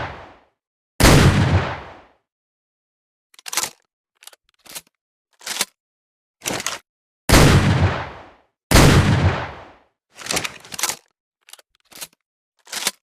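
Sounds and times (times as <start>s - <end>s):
shotgun blast: 0.0s - 0.3s, 1.0s - 2.0s, 7.3s - 9.7s
gun handling clacks: 3.4s - 5.8s, 10.2s - 13.0s.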